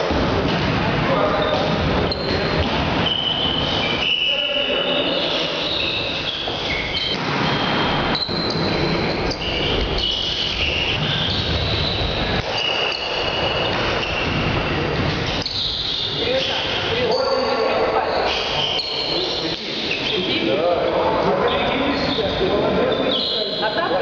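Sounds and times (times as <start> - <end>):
shoes squeaking on court floor: 1.3 - 20.4.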